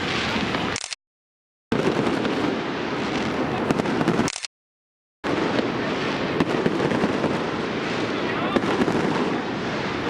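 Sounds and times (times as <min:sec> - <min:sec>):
fireworks rumble and crackle: 0:00.0 - 0:01.0, 0:01.7 - 0:04.5, 0:05.2 - 0:10.0
fireworks sharp pops: 0:01.7 - 0:04.5, 0:05.2 - 0:10.0.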